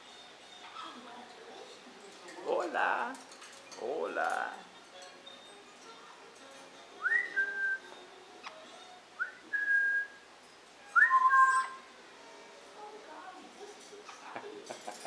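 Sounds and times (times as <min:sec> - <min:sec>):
pet bird whistling: 0:07.0 - 0:07.8, 0:10.9 - 0:11.8.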